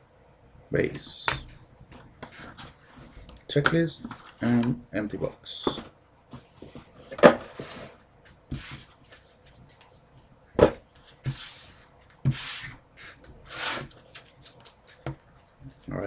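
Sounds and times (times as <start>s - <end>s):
cards sliding and rustling: 10.9s - 15.4s.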